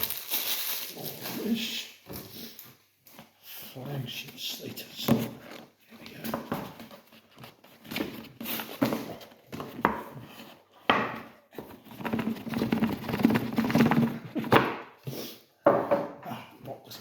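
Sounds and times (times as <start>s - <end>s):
cardboard rustling: 5.0s - 10.7s, 11.4s - 14.7s.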